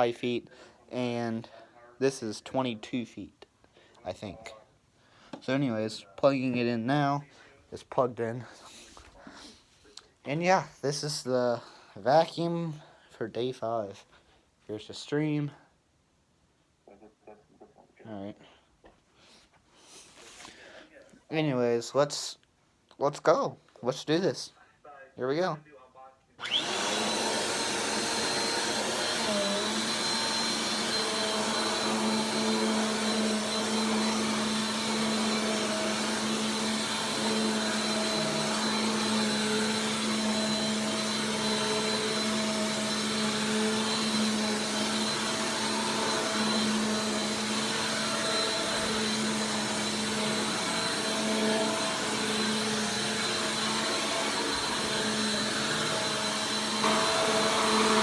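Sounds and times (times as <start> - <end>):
upright vacuum cleaner running: 26.4 - 58.0.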